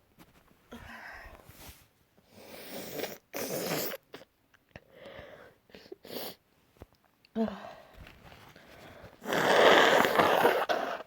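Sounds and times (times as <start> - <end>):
person breathing: 4.8 - 6.2, 7.4 - 9.8.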